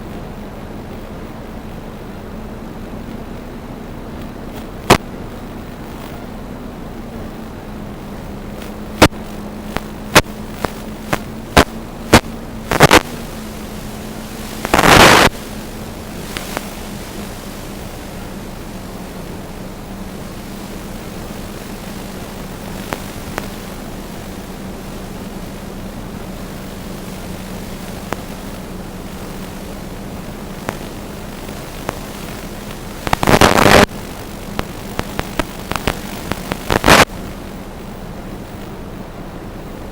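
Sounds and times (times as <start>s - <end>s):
crackling noise burst: 0.0s - 39.9s
steady hiss: 0.0s - 39.9s
sharp clicks or pops: 4.2s - 6.2s, 8.6s - 13.2s, 14.6s - 15.4s, 34.6s - 37.2s.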